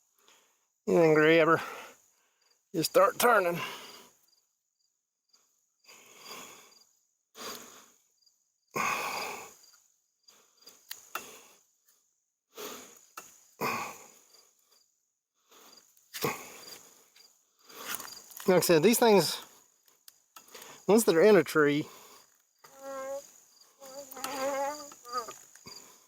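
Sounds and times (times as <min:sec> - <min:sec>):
crickets chirping: 0:00.9 - 0:11.9, 0:15.6 - 0:26.0
man breathing hard: 0:03.6 - 0:04.2, 0:05.8 - 0:08.1, 0:08.8 - 0:09.7, 0:12.5 - 0:14.6, 0:21.8 - 0:22.4.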